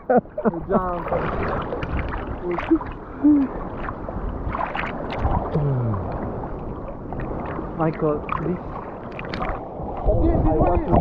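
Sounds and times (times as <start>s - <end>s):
sea water sloshing and splashing: 0.1s - 11.0s
low vocal sounds: 2.4s - 3.6s, 5.5s - 6.3s.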